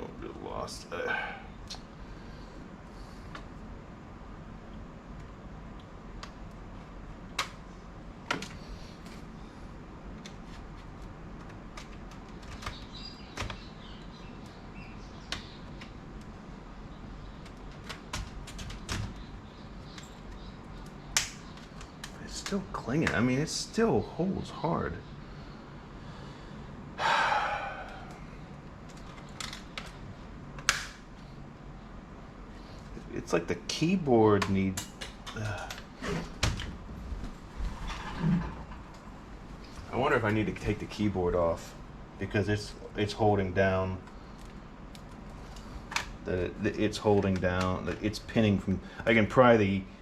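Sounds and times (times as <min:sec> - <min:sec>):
plastic clicks and snaps: 0:19.8 - 0:23.2, 0:30.6 - 0:31.0
light scraping: 0:37.5 - 0:38.8.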